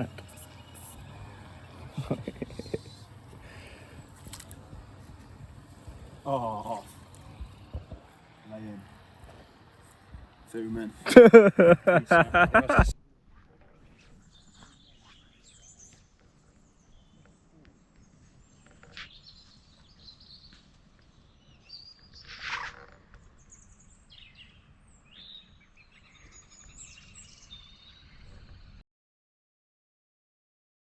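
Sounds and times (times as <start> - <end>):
birds chirping and singing: 0.0 - 12.8, 23.2 - 28.8.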